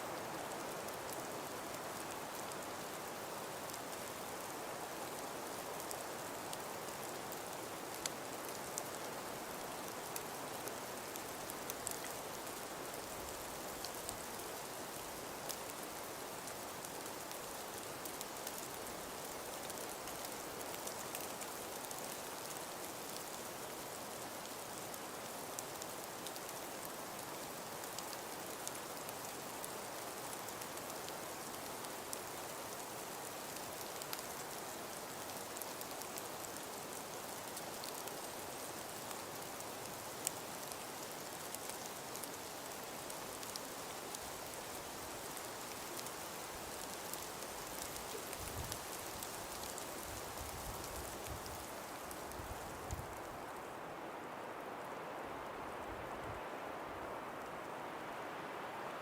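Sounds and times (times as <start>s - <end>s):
hiss of wind-driven snow: 0.0s - 59.0s
faint ticks of flakes striking: 9.7s - 23.3s, 30.5s - 53.6s.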